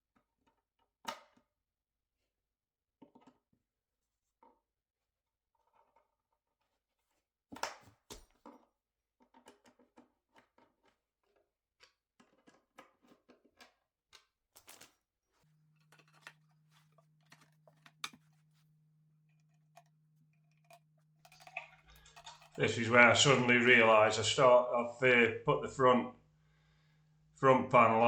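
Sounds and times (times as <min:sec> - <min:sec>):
furniture parts clicking and scraping: 0:14.6 - 0:18.6.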